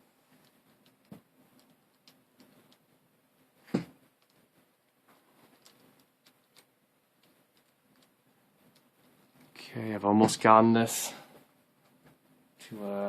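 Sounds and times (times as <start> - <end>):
plastic puzzle pieces clicking: 0.4 - 2.9, 4.2 - 9.5.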